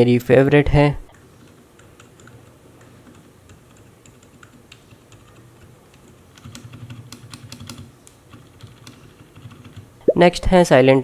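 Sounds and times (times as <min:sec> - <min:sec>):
quiet mechanical keyboard typing: 0:01.1 - 0:09.9.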